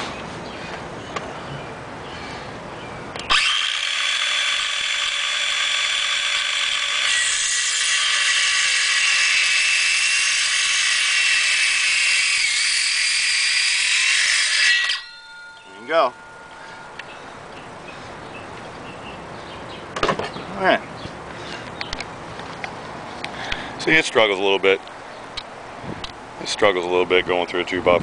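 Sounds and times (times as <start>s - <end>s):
circular saw cutting wood: 3.3s - 16.1s.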